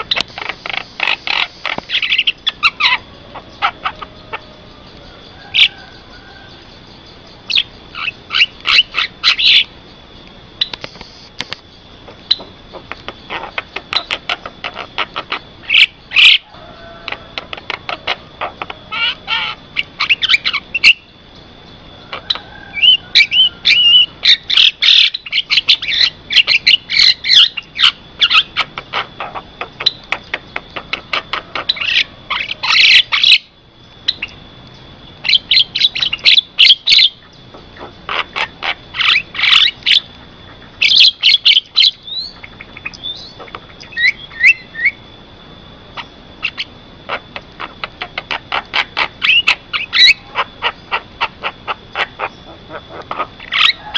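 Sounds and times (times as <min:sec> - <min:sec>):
bird singing and chattering: 0:00.0 - 0:45.2, 0:45.8 - 0:53.9.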